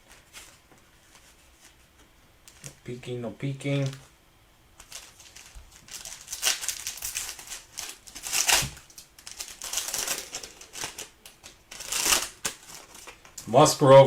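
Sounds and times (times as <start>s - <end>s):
wrapper crinkling and rustling: 4.8s - 13.6s.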